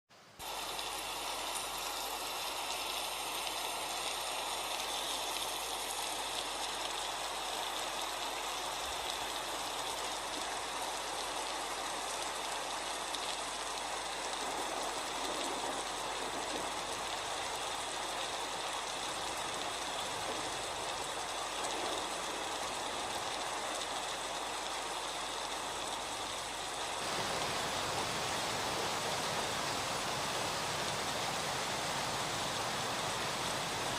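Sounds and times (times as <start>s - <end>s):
waterfall rushing: 27.0s - 33.9s.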